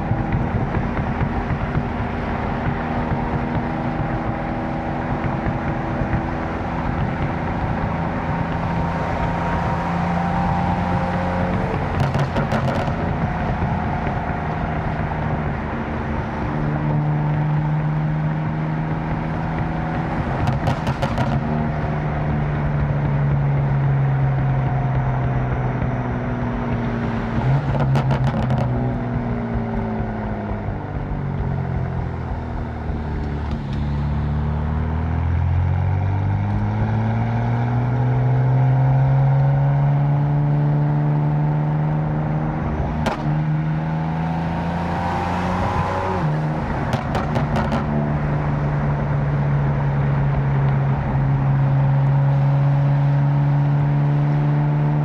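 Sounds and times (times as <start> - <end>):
exhaust crackling: 0.0 - 24.6
car engine accelerating: 0.0 - 55.0.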